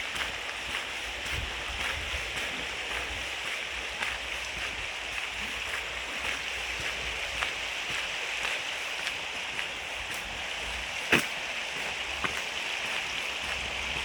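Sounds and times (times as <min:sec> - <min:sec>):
stream rushing over rocks: 0:00.0 - 0:14.0.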